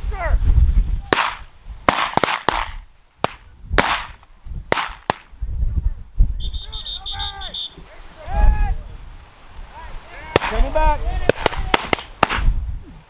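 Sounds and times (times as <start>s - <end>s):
wind rumble on microphone: 0.0s - 13.0s
shotgun shots: 1.2s - 5.3s, 11.3s - 12.5s.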